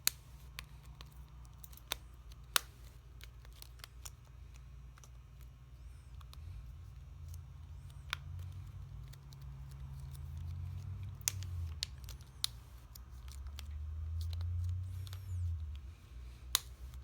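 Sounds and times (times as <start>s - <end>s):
plastic snaps: 7.3s - 15.7s, 16.5s - 17.0s.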